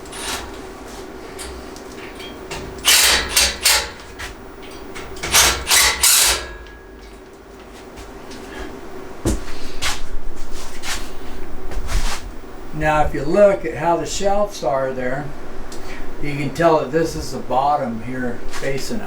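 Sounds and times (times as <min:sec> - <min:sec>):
metal parts knocking and clanking: 0:01.4 - 0:07.2.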